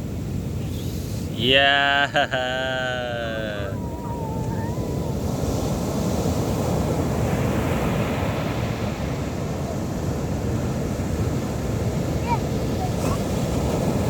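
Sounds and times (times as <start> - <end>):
ocean waves breaking: 0.0 - 14.0.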